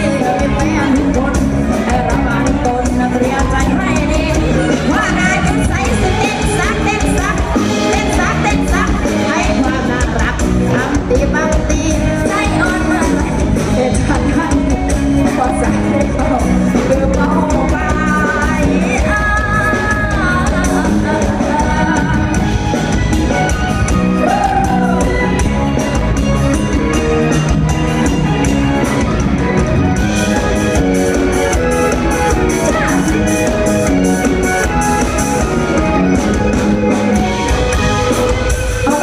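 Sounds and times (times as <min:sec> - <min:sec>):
driving drum beat: 0:00.0 - 0:39.0
person singing with band: 0:00.0 - 0:39.0.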